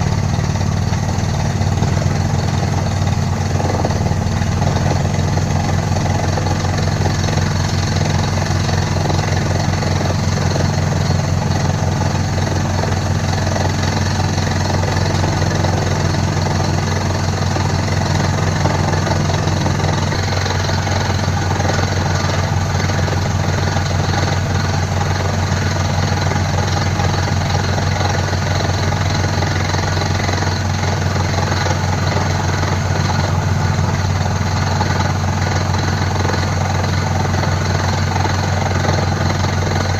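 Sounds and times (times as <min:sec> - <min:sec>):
rock drill rattling: 0:01.5 - 0:39.9.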